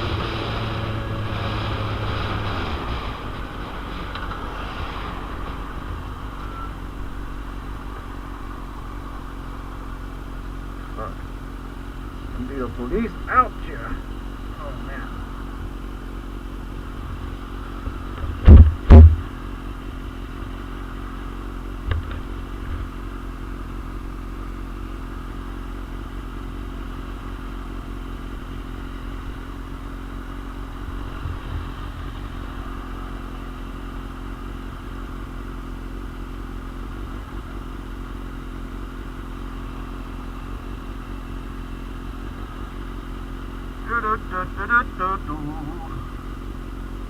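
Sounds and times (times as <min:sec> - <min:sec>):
motorcycle engine running: 0:00.0 - 0:47.0
loud thumps: 0:18.1 - 0:19.4
wind noise on microphone: 0:18.2 - 0:19.3.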